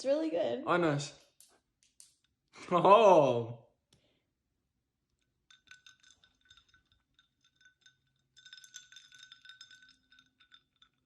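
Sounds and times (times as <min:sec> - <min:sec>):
spoon clinking in glass: 0:05.2 - 0:11.0.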